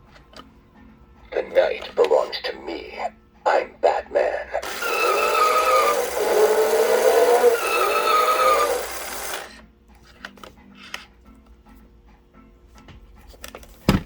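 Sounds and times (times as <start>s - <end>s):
toy speaker engine revving effect: 3.9s - 9.6s.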